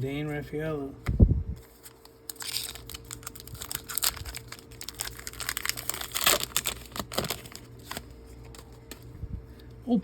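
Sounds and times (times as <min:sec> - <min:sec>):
cards clicking and rustling: 0:01.6 - 0:09.1.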